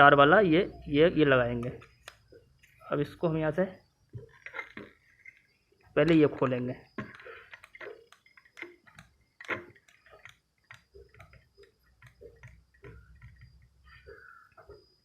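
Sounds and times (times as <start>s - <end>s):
screwdriver clicks and ticks: 6.9s - 13.7s.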